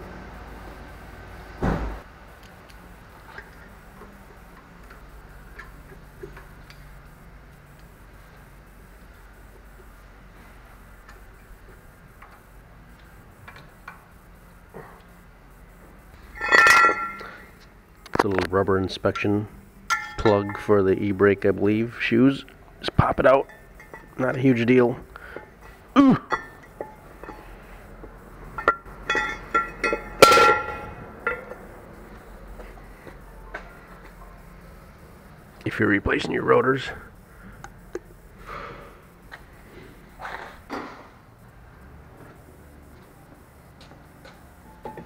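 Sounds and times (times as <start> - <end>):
metal clanks ringing: 16.3 - 17.4, 19.1 - 20.7, 23.4 - 24.2, 26.2 - 27.5, 28.6 - 31.7.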